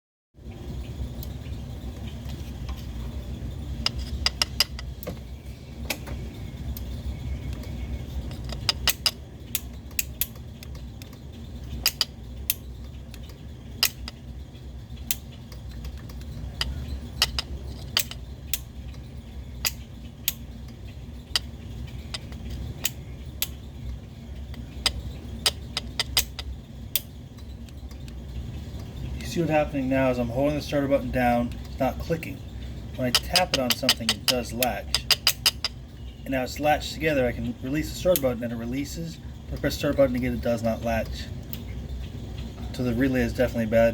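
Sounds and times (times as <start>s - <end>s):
steady low hum: 0.4s - 43.9s
relay clicks and metallic taps: 7.5s - 29.3s, 31.2s - 36.1s.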